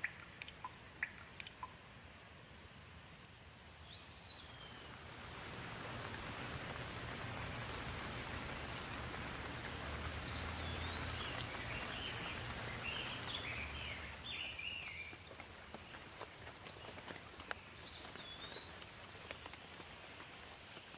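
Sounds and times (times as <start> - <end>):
rain hiss: 0.0 - 20.9
bird chirping: 3.6 - 5.0, 6.7 - 8.9, 10.1 - 15.2, 16.8 - 19.6.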